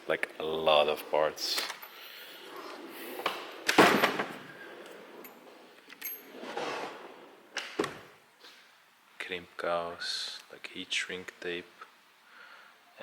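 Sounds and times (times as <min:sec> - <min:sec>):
plastic bins rustling and knocking: 0:02.9 - 0:07.0.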